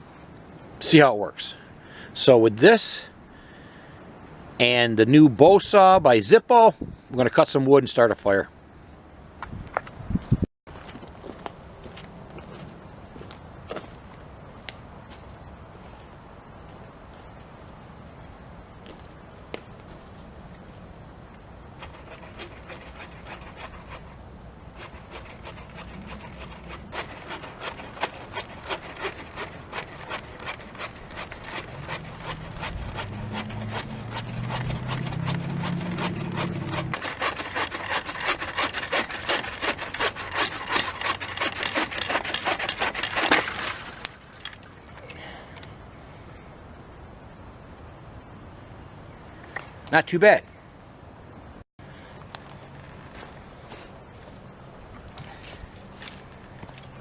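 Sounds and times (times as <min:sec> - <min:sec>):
low hum: 0:20.6 - 0:40.7
saw cutting through wood: 0:21.8 - 0:43.8.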